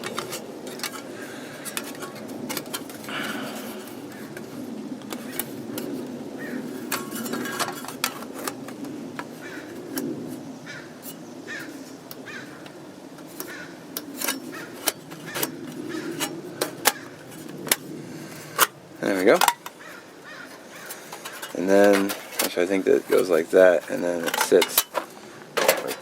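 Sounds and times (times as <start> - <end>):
metal parts clicking and clinking: 0.0 - 3.1, 6.8 - 9.3, 13.2 - 19.8, 20.5 - 26.0
bird calling: 6.3 - 7.9, 9.3 - 17.4, 19.3 - 22.3.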